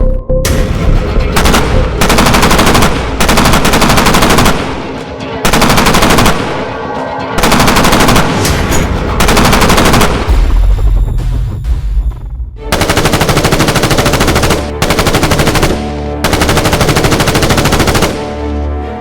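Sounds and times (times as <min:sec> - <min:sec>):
automatic gunfire bursts: 0:01.4 - 0:06.6, 0:07.4 - 0:08.6, 0:09.2 - 0:10.4, 0:12.7 - 0:18.4.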